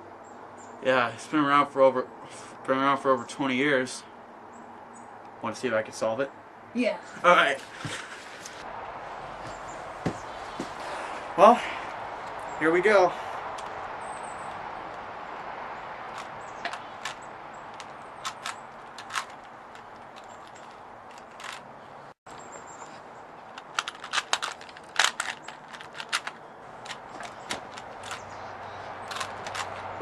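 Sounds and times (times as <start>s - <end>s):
puzzle cube plastic clicks: 17.8s - 21.6s, 23.6s - 28.2s, 29.1s - 29.8s.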